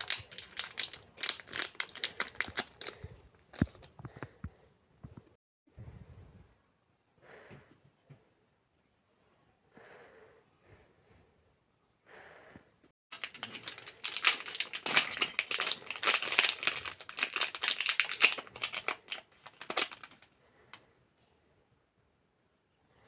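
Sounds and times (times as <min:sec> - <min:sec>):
packaging crinkling and rustling: 0:00.0 - 0:03.9, 0:13.1 - 0:20.3.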